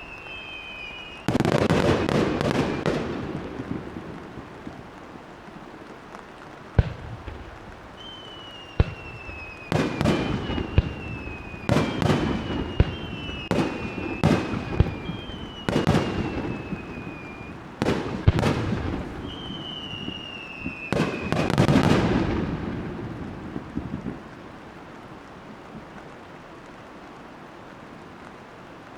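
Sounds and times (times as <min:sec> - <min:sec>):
firework whistling: 0:00.0 - 0:03.5, 0:06.8 - 0:22.4
crackling firework volley: 0:00.0 - 0:28.9.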